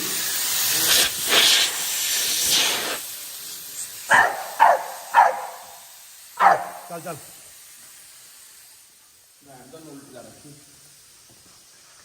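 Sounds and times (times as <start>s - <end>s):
water spraying with hiss: 0.0s - 12.0s
dog barking: 4.1s - 5.8s, 6.4s - 6.9s.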